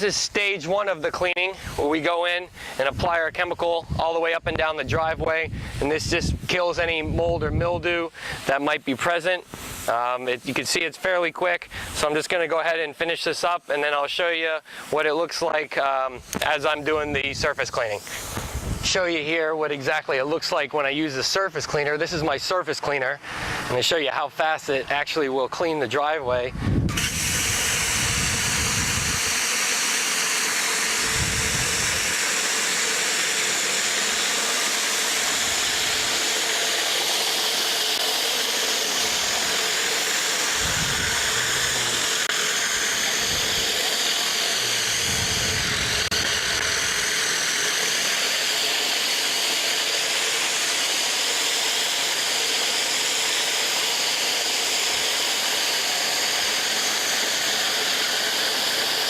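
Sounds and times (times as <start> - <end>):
high-pressure water jets hissing: 0.0 - 3.9, 8.0 - 26.1, 26.9 - 59.0
low rumble: 44.6 - 46.8.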